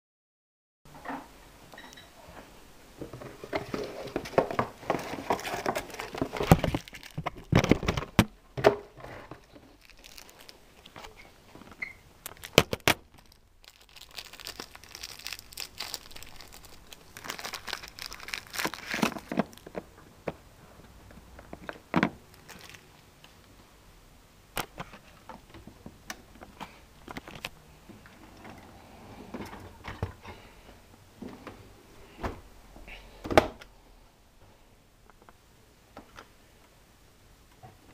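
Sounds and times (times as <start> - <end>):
crinkling and rustling: 2.3 - 23.7, 24.5 - 28.7.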